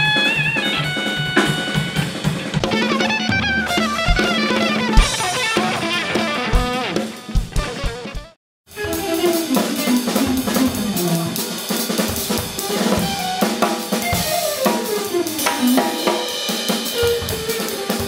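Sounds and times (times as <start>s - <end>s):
drum kit with band: 0.0s - 18.0s
sliding melodic lines: 2.6s - 6.1s.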